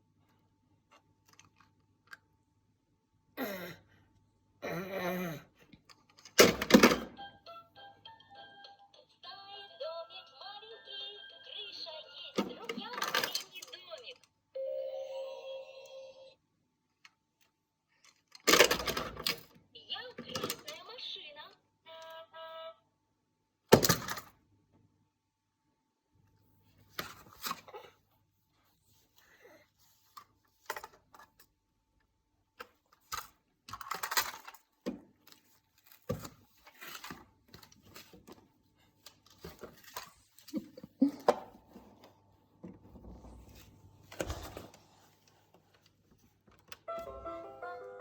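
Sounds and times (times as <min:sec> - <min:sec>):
toys clattering and knocking: 0:12.3 - 0:14.3, 0:18.0 - 0:19.6, 0:20.2 - 0:20.8, 0:32.6 - 0:38.4
tinkly electronic tune: 0:46.9 - 0:48.0.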